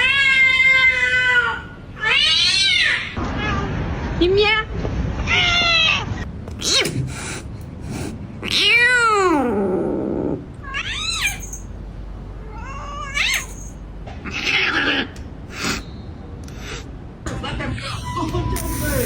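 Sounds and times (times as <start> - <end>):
cat meowing: 8.4 - 11.7, 12.4 - 13.7
breathy hiss-like bursts: 18.6 - 19.0.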